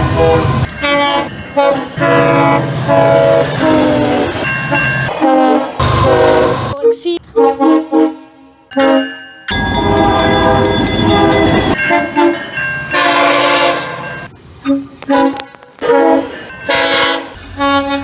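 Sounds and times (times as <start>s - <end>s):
passing train rumble: 0.0s - 8.7s, 9.5s - 18.0s
train air horn blasts: 0.0s - 9.1s, 13.0s - 18.0s.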